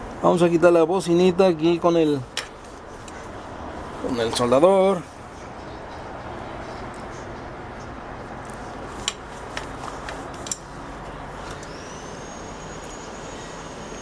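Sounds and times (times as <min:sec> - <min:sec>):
steady background noise: 0:00.0 - 0:14.0
sharp clicks of tools handled: 0:08.4 - 0:10.7
faint thin high whine: 0:09.8 - 0:14.0.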